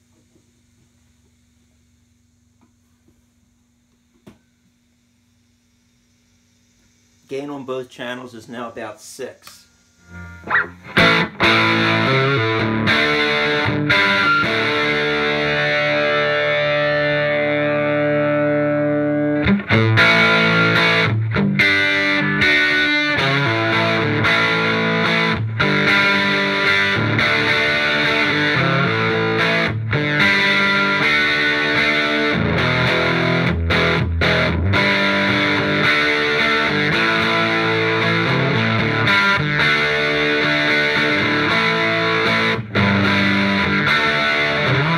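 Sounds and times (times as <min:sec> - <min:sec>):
overdriven electric guitar: 0:10.0 - 0:44.9.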